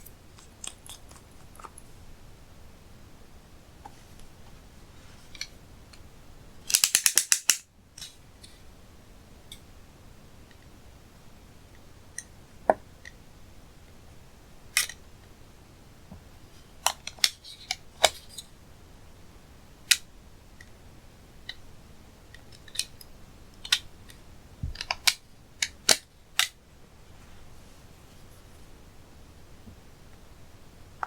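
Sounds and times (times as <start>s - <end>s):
sharp clicks and snaps: 6.7s - 8.1s.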